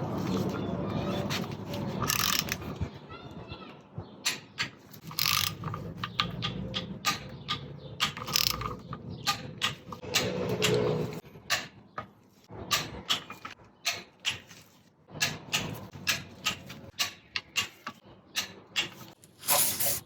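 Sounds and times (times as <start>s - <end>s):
ratchet wrench clicking: 2.0s - 2.6s, 5.0s - 5.8s, 7.1s - 8.7s.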